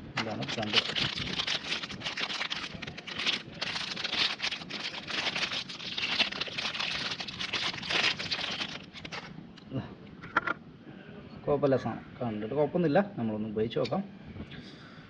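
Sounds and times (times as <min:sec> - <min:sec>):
packaging rustling and crinkling: 0:00.0 - 0:09.4.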